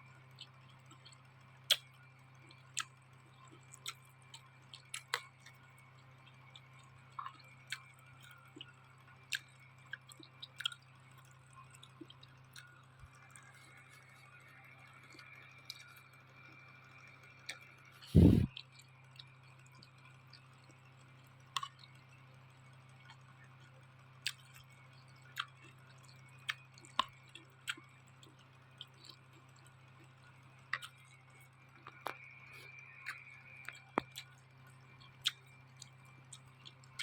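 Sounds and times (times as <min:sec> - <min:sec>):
person chewing noodles: 0:00.3 - 0:16.0, 0:17.4 - 0:19.3, 0:24.2 - 0:24.7, 0:25.3 - 0:37.0
low hum: 0:13.0 - 0:18.5.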